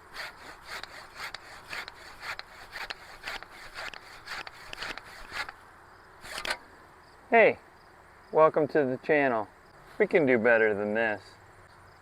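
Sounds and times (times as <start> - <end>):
hand saw cutting wood: 0.0 - 5.6, 6.2 - 6.6.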